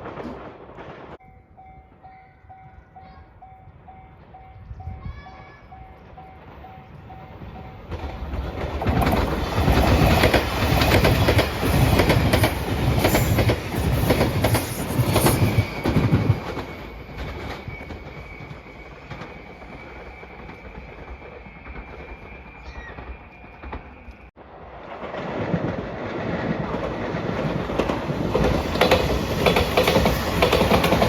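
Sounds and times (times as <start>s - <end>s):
train passing at speed: 0.0s - 31.0s.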